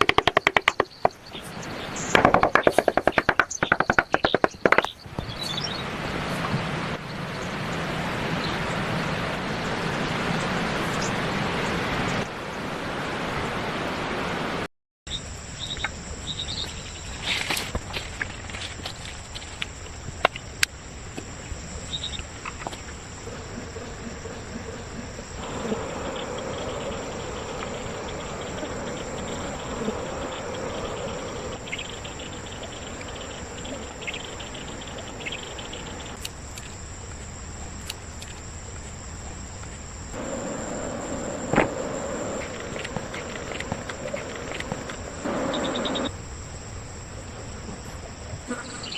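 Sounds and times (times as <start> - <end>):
sharp clicks or knocks: 0.0 - 1.2
crickets chirping: 0.0 - 14.5, 15.1 - 48.9
rustling or scraping noise: 17.1 - 19.8.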